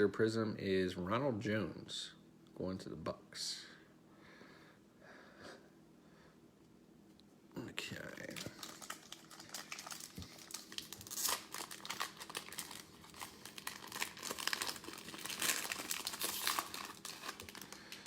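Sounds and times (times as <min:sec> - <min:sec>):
foil wrapper tearing and crinkling: 0:08.2 - 0:18.0.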